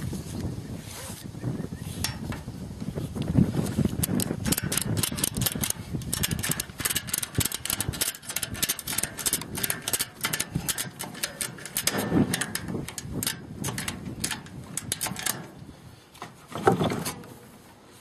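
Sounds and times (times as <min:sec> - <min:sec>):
ratchet strap clicking: 0:03.2 - 0:15.8.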